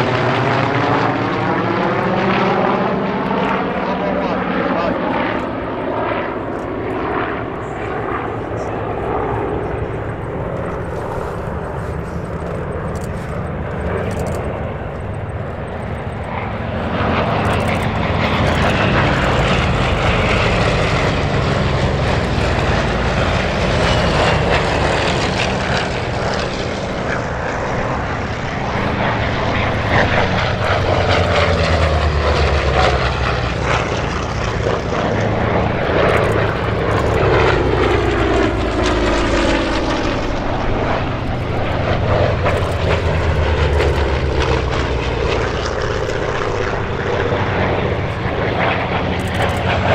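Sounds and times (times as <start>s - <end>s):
propeller aircraft engines droning: 0.0s - 49.9s.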